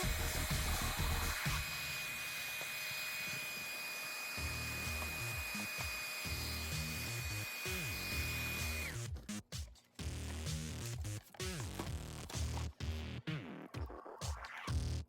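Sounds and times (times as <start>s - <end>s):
background music with bass line: 0.0s - 1.6s, 6.3s - 15.0s.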